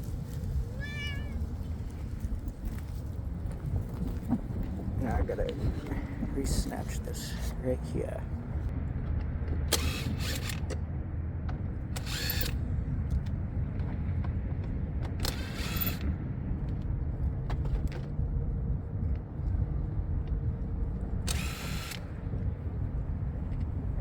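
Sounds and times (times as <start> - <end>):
steady low rumble: 0.0 - 24.0
tool working a fastener: 12.0 - 12.6, 21.3 - 22.1.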